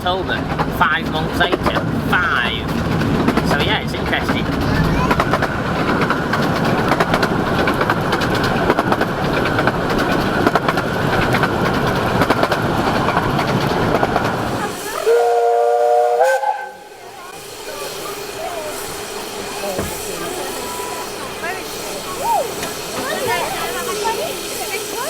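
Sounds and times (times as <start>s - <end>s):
miniature train rumbling on track: 0.0s - 25.0s
locomotive chime whistle: 15.0s - 23.0s.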